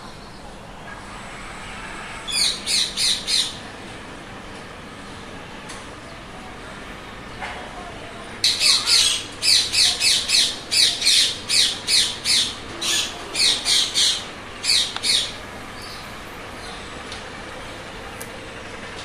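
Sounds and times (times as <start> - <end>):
parrot squawking: 2.3 - 3.6, 8.4 - 15.3.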